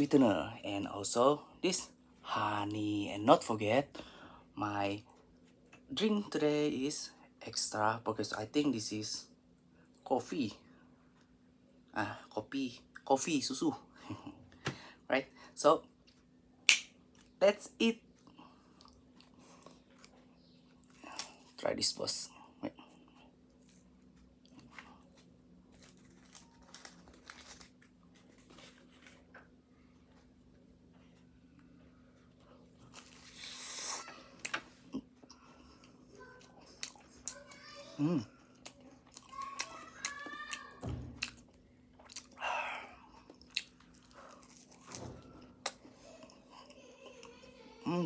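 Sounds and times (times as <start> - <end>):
faint steady hum: 0.0 - 48.0
biting and chewing pastry: 23.5 - 29.6, 32.4 - 34.6, 41.2 - 47.3.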